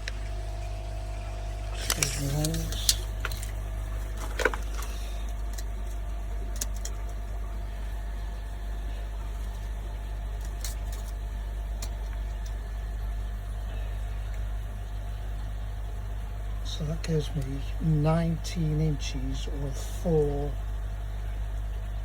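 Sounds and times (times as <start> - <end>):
motor humming: 0.0 - 22.0.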